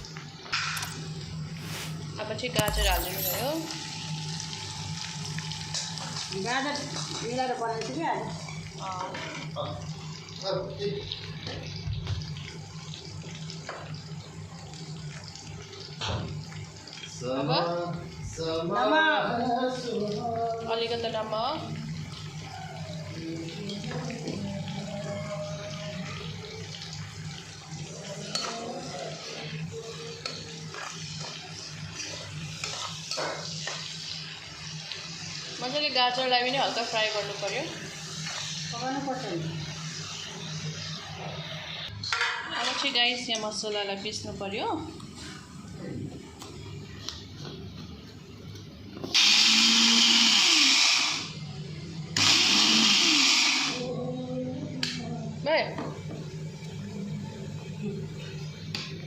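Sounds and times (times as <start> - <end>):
vegetables sizzling in oil: 0.0 - 53.9
electric mixer grinder grinding: 49.0 - 51.4, 52.2 - 53.9.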